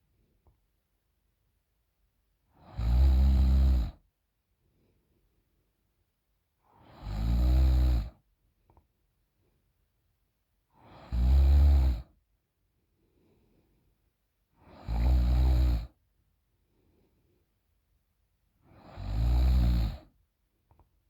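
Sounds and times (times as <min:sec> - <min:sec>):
woman snoring: 0:02.6 - 0:04.0, 0:06.8 - 0:08.2, 0:10.8 - 0:12.1, 0:14.6 - 0:16.0, 0:18.7 - 0:20.1
faint breathing: 0:12.9 - 0:14.0, 0:16.6 - 0:17.6.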